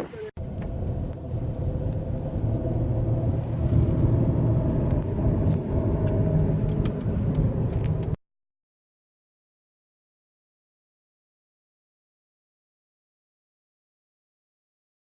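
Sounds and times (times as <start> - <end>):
train rumbling past: 0.4 - 8.2.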